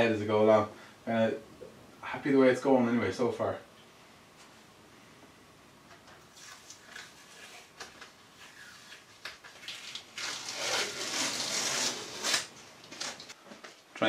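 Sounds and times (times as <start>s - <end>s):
rasping noise of hand sanding: 10.2s - 12.4s.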